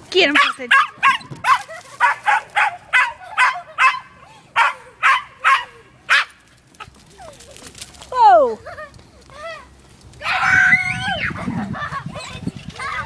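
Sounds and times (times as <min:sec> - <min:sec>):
dog barking: 0:00.4 - 0:06.3.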